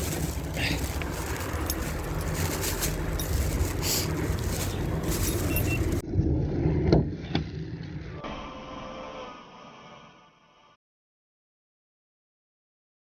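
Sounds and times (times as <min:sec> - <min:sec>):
car engine rumbling: 0:00.0 - 0:06.8.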